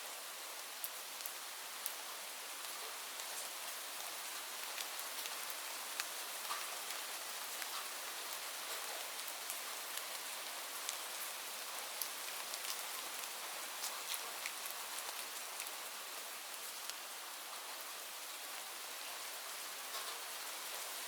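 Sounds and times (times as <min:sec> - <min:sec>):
steady rain hiss: 0:00.0 - 0:21.0
raindrops ticking close by: 0:00.8 - 0:17.8, 0:19.8 - 0:21.0.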